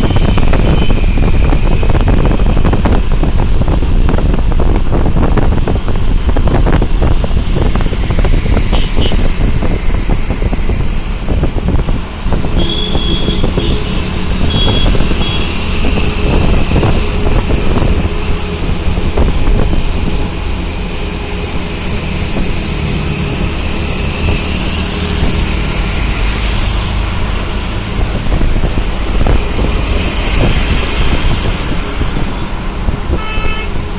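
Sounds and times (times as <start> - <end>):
road traffic rumble: 0.0 - 33.9
wind buffeting microphone: 0.0 - 33.9.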